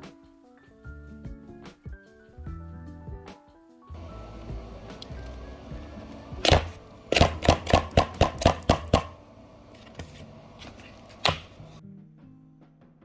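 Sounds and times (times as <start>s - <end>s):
faint background music: 0.0s - 13.0s
hard object tapping: 4.0s - 11.8s.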